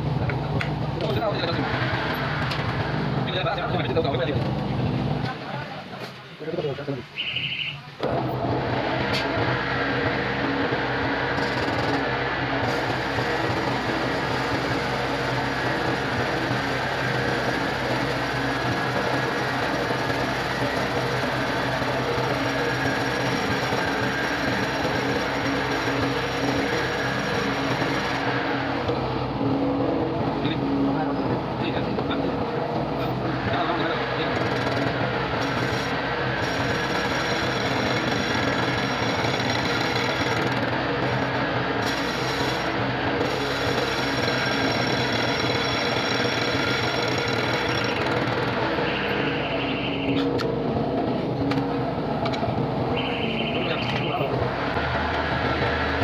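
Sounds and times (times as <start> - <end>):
machine rattling and humming: 0.0 - 5.4, 8.0 - 53.2, 54.0 - 56.0
lathe scraping metal: 12.6 - 29.0, 33.2 - 50.0.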